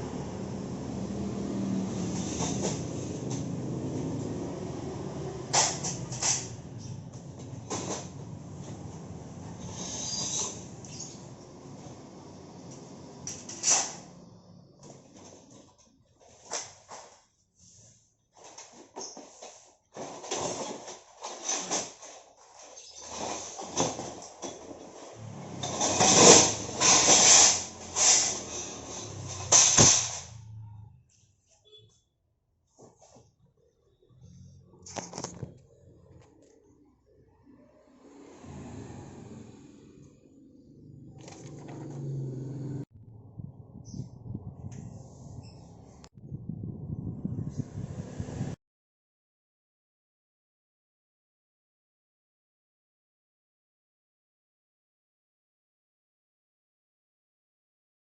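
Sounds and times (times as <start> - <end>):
scraping rustle: 1.8 - 3.8, 5.5 - 11.4, 14.8 - 30.4
low rumble: 42.9 - 48.6.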